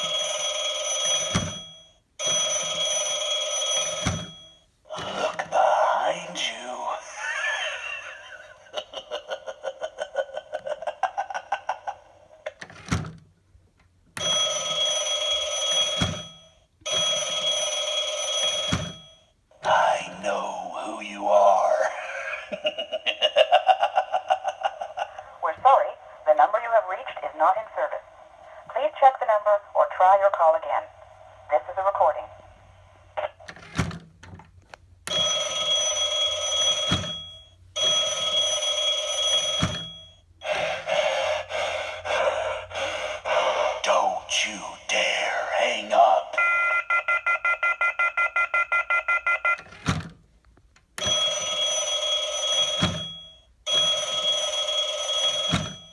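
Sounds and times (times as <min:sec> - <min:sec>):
telephone bell ringing: 0:00.0 - 0:05.3, 0:14.2 - 0:20.1, 0:35.1 - 0:41.1, 0:45.0 - 0:49.8, 0:51.0 - 0:55.9.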